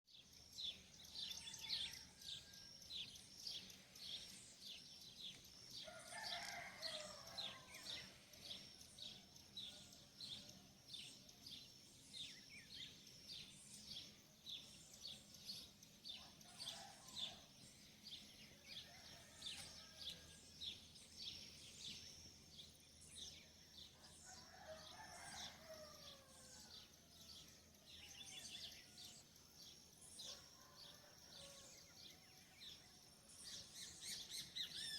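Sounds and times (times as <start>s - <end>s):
rooster crowing: 5.8s - 8.0s, 18.8s - 20.4s, 24.2s - 26.7s.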